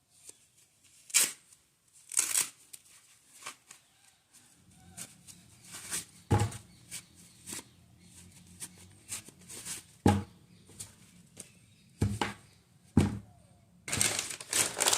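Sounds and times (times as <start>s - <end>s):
dull thumps: 6.3s - 6.7s, 10.0s - 10.4s, 12.0s - 12.4s, 13.0s - 13.3s
packaging rustling: 13.9s - 14.9s.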